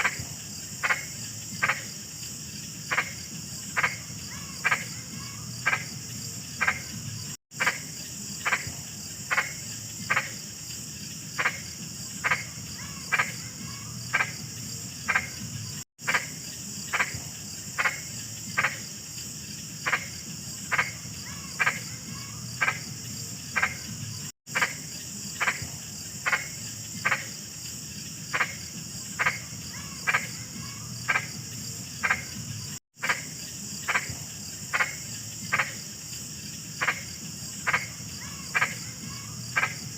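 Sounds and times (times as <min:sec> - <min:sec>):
frog croaking: 0:00.0 - 0:02.0, 0:02.8 - 0:10.5, 0:11.3 - 0:19.0, 0:19.7 - 0:27.5, 0:28.2 - 0:36.0, 0:36.7 - 0:39.9
high insect trill: 0:00.0 - 0:39.9.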